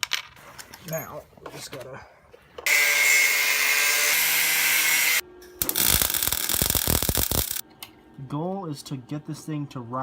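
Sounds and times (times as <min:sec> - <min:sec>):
power tool running: 0:02.6 - 0:07.6.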